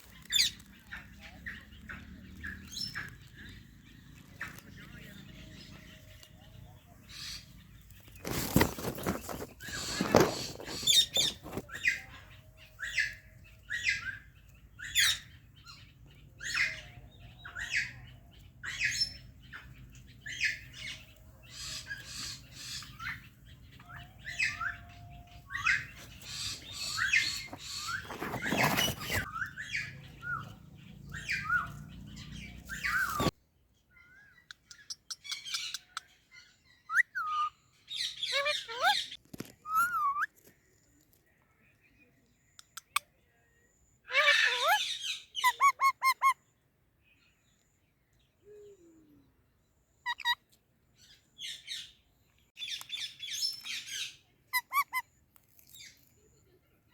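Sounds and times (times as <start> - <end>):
parrots chirping and squawking: 0.0 - 3.7, 8.3 - 12.1, 18.6 - 33.4, 36.8 - 40.3, 44.1 - 46.4, 50.0 - 50.4, 52.7 - 55.7.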